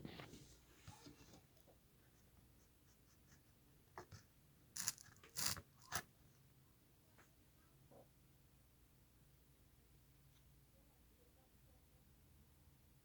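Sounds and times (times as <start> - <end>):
small tools scraping and clicking: 4.8 - 6.0.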